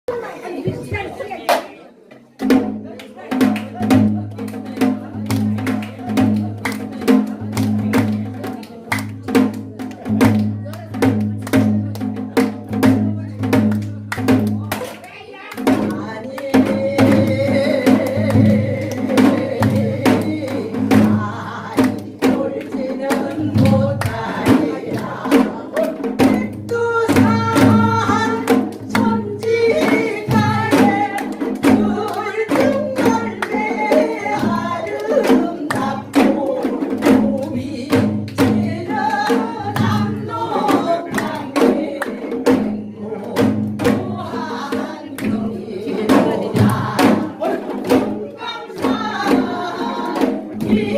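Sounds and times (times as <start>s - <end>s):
person singing: 15.7s - 50.9s.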